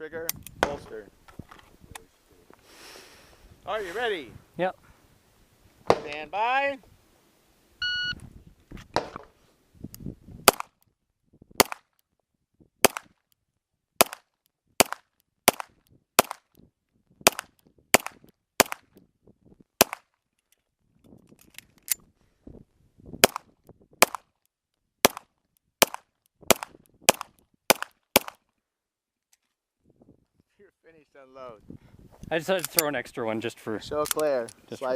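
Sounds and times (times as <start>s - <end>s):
pistol shots: 10.5s - 10.8s, 11.6s - 11.8s, 12.8s - 13.1s, 14.0s - 16.4s, 17.2s - 18.9s, 19.8s - 20.0s, 23.2s - 24.2s, 25.0s - 28.4s.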